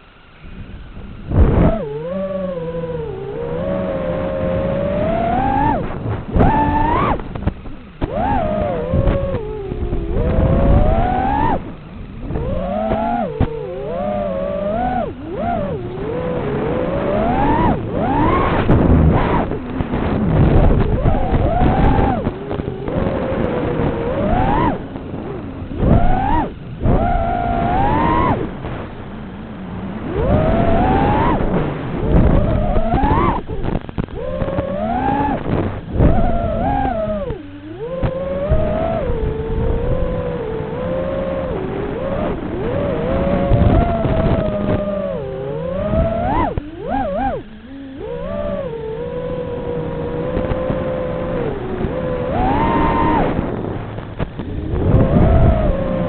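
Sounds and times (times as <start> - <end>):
quadcopter motors whining: 0.0 - 56.0
wind rumble: 0.0 - 56.0.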